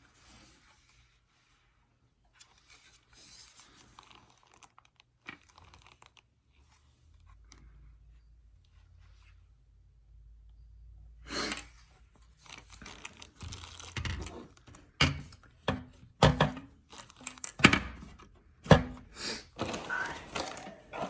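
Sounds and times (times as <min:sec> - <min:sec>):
packaging rustling and crinkling: 0:02.5 - 0:06.3, 0:12.2 - 0:15.0, 0:16.8 - 0:18.2.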